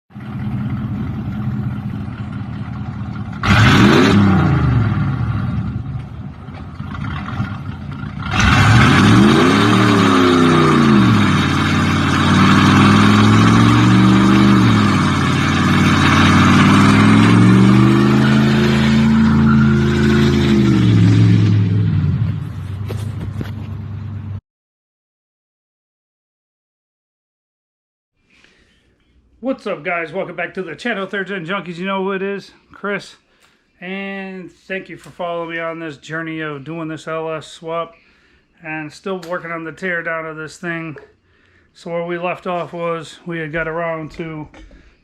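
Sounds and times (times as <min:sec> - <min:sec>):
car engine idling and revving: 0:00.1 - 0:24.4.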